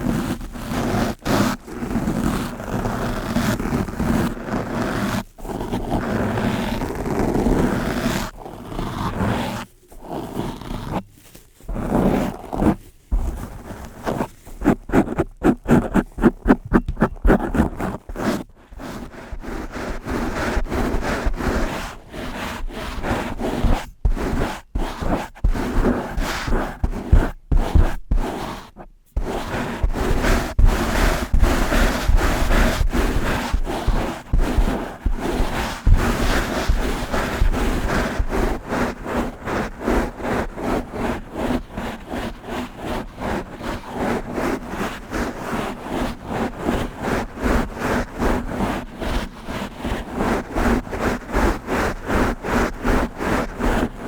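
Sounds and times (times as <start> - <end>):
brush scratching on microphone: 0.0 - 54.0.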